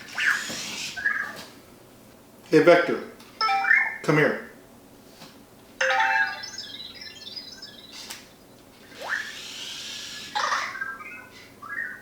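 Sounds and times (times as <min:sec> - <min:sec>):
robot electronic beeps and chirps: 0:03.4 - 0:04.0, 0:05.8 - 0:07.8.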